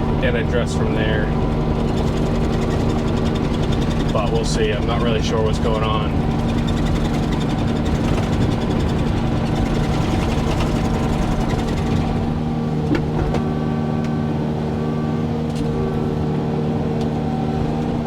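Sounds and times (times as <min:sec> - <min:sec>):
diesel engine running: 0:00.0 - 0:18.0
clunk: 0:06.4 - 0:14.2.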